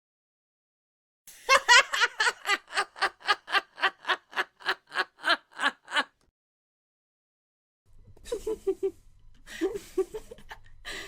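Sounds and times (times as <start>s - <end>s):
woman laughing: 1.5s - 6.2s, 8.2s - 11.0s.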